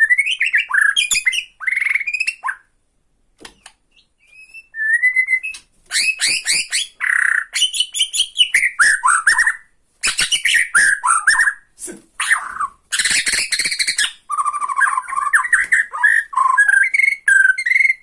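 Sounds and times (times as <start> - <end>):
bird singing and chattering: 12.2 - 18.0.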